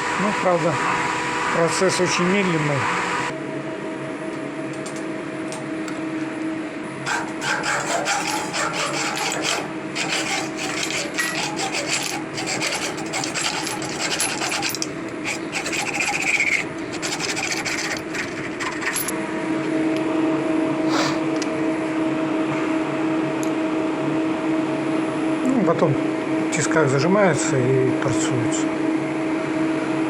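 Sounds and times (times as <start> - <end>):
milling cutter rasping in steel: 7.1 - 19.2
spindle humming: 7.1 - 19.2.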